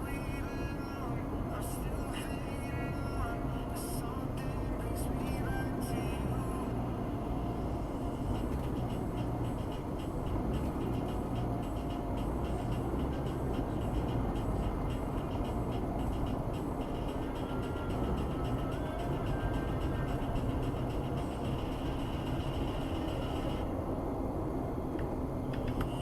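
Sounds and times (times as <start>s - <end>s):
road noise: 0.0s - 26.0s
vehicle engine rumble: 0.0s - 26.0s
light regular ticking: 8.1s - 23.6s.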